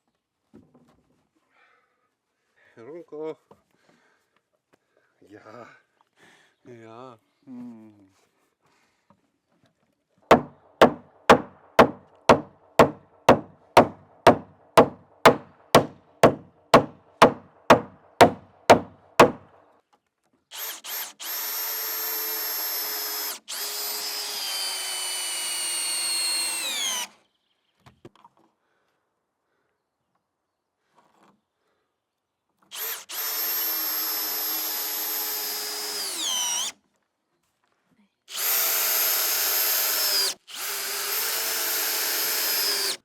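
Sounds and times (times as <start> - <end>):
hammer blows on timber: 10.3 - 19.5
power tool motor whine: 20.6 - 27.1, 32.8 - 36.7, 38.3 - 43.0.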